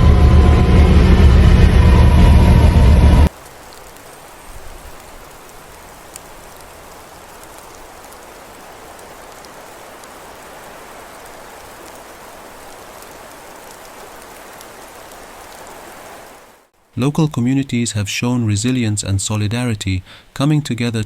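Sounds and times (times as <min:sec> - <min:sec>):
steady rain hiss: 0:00.0 - 0:21.0.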